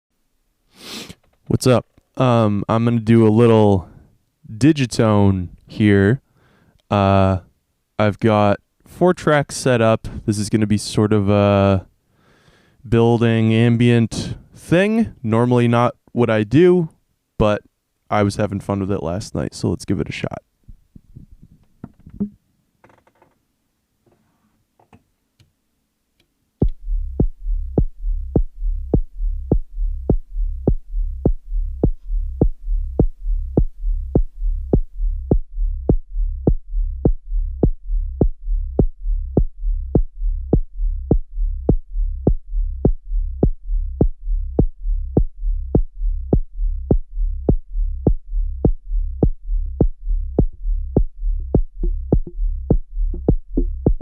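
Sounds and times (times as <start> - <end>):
synthesized kick drum: 26.6 - 54.0.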